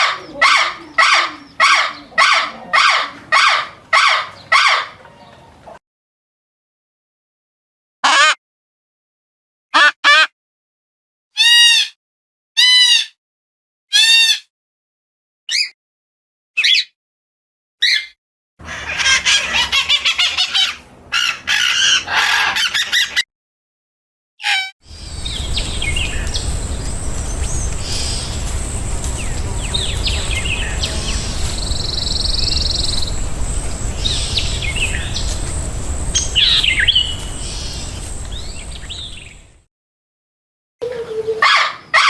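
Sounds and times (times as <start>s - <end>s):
birds chirping and calling: 0.0s - 5.8s, 17.8s - 23.2s, 24.5s - 39.6s
low background noise: 24.9s - 39.6s.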